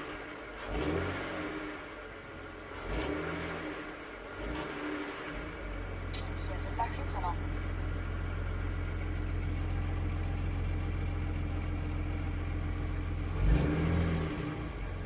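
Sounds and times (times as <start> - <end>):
car engine idling: 1.6 - 3.0, 3.8 - 13.6, 14.2 - 15.0.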